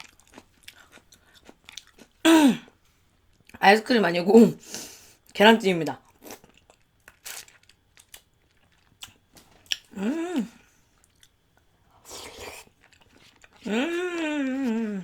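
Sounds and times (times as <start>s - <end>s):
chewing clicks and lip smacks: 0.0s - 2.2s, 6.0s - 10.0s
person humming: 2.3s - 2.6s, 9.9s - 10.6s, 13.6s - 15.0s.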